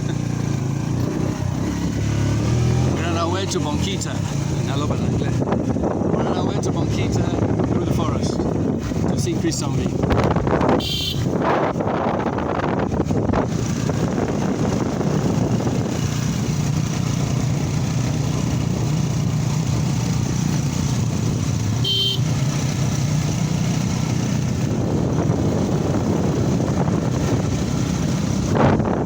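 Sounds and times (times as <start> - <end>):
vehicle engine running: 0.0 - 29.0.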